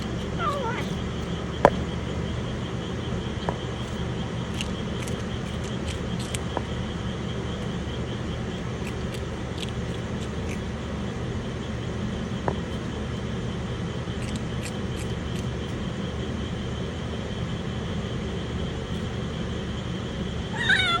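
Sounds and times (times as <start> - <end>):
steady low rumble: 0.0 - 20.5
kitten meowing: 0.4 - 1.0, 20.5 - 21.0.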